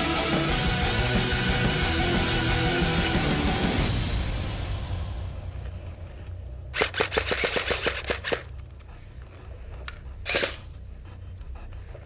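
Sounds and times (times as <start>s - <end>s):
airsoft rifle shots: 6.7s - 8.5s, 10.2s - 10.7s.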